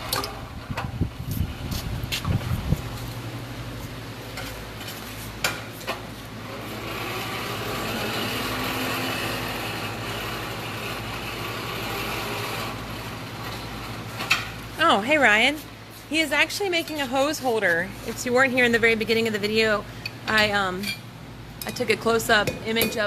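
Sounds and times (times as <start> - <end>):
machine running with low hum: 0.0 - 16.1.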